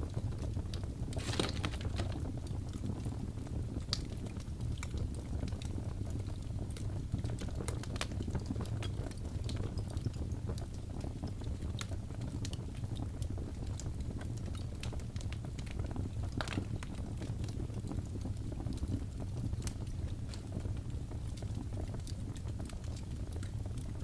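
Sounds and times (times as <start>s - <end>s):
fire crackling and popping: 0.0s - 24.0s.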